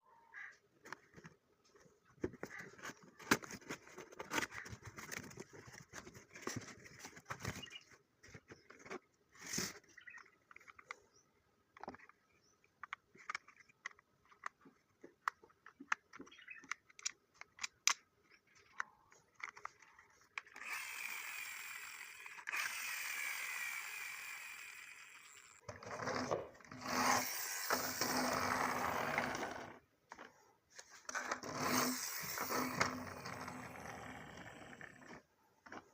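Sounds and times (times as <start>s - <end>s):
small geared motor whirring: 20.4s - 29.8s, 31.1s - 35.3s.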